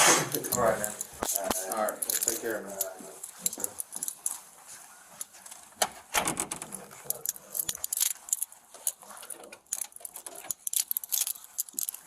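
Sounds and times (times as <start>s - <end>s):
metal jingling and clicking: 0.4s - 4.5s, 6.5s - 12.0s.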